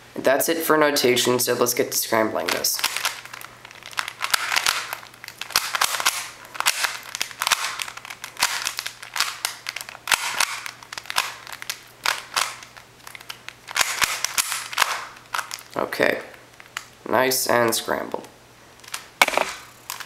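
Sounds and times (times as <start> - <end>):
plastic puzzle cube clacking: 2.5 - 15.7.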